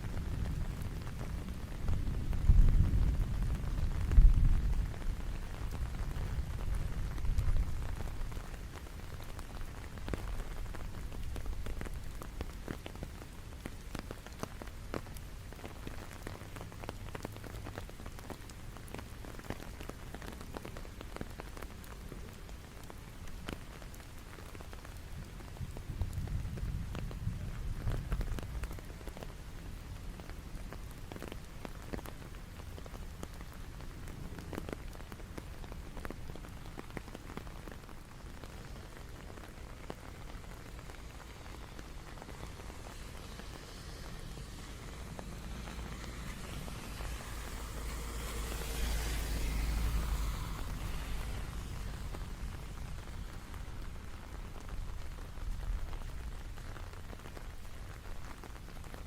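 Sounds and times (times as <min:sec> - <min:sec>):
rain falling: 0:00.0 - 0:59.0.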